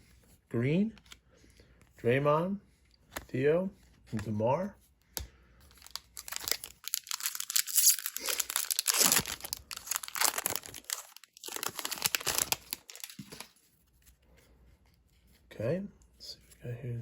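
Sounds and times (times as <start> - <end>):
plastic wrapper crinkling: 5.7 - 13.6
wrapper tearing: 5.7 - 13.6.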